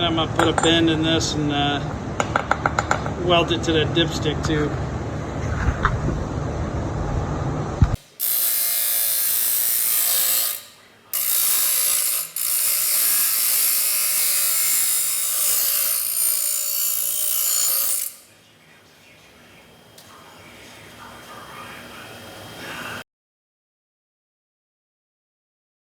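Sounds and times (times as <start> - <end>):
welder welding metal: 8.0 - 18.3.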